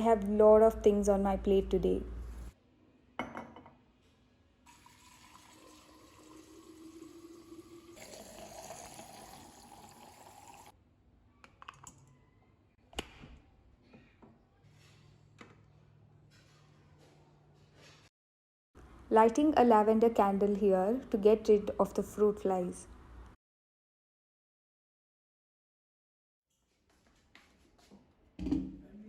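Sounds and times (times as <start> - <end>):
water running into a container: 4.7 - 10.7.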